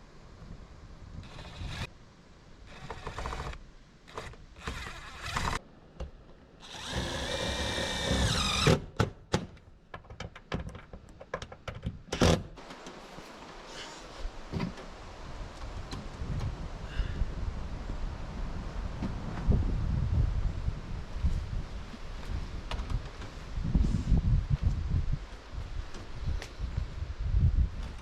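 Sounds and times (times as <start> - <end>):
power drill driving screws: 1.2 - 1.9, 2.7 - 5.6, 6.6 - 8.9.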